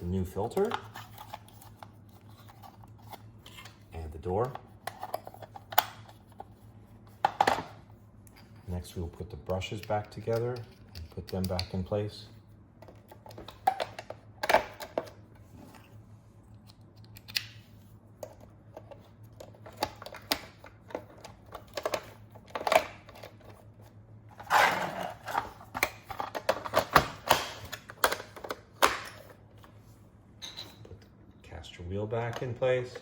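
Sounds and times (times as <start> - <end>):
plastic parts clicking and snapping: 9.7 - 11.8, 18.2 - 23.6, 25.2 - 29.3.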